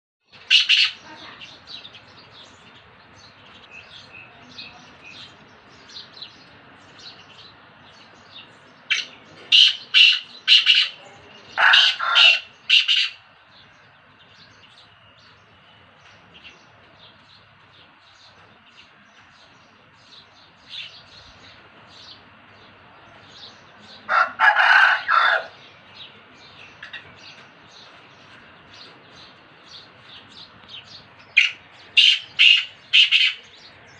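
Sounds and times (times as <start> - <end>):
francolin calling harshly: 0.4 - 1.6, 8.9 - 13.2, 31.3 - 33.9.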